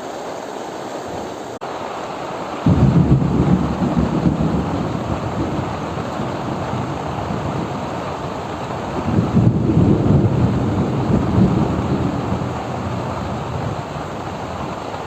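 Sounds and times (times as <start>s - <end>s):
heavy rain hissing: 0.0s - 15.0s
thunder rumbling: 2.6s - 15.0s.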